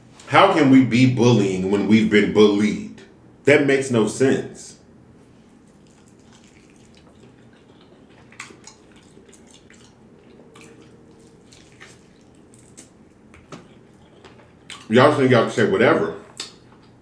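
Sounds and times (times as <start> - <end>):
low room hum: 0.0 - 17.0
person chewing with mouth smacks: 5.4 - 14.9, 16.3 - 17.0.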